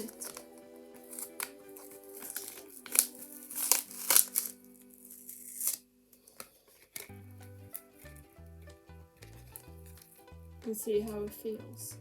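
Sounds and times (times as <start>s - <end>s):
background music: 0.0s - 5.8s, 7.0s - 12.0s
plastic packaging tearing and crinkling: 0.0s - 7.1s.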